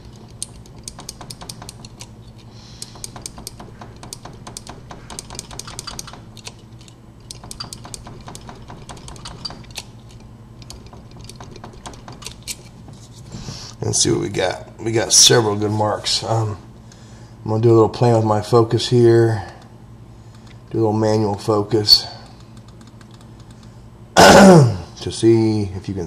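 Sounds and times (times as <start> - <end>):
key rattling in padlock: 0.0 - 12.7.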